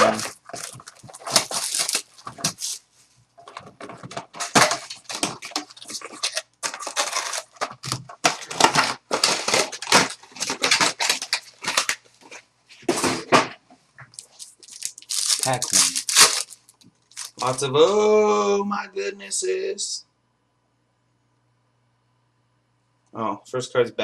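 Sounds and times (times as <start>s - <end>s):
plastic wrap and cardboard tearing: 0.0s - 2.8s, 3.4s - 13.4s, 14.2s - 17.6s.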